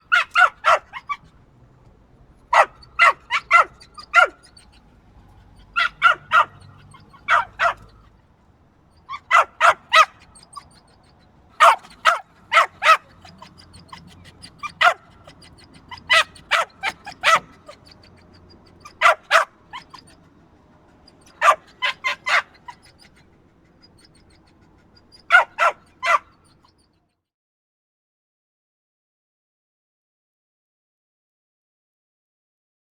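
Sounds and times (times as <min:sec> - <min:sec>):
small dog barking: 0:00.0 - 0:01.3, 0:02.5 - 0:04.8, 0:05.4 - 0:08.1, 0:09.0 - 0:20.3, 0:21.0 - 0:26.8.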